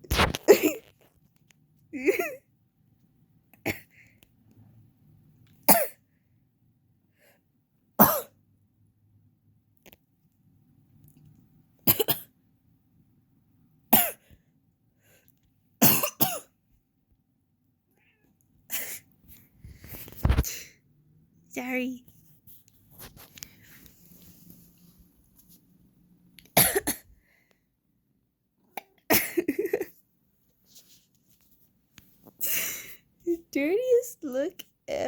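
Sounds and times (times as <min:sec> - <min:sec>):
person coughing: 0:08.0 - 0:08.3, 0:15.8 - 0:16.5, 0:26.6 - 0:27.0, 0:29.1 - 0:29.8.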